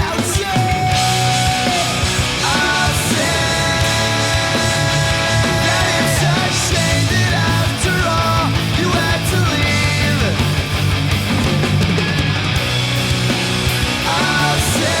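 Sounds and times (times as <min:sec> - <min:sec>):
hard rock music: 0:00.0 - 0:15.0.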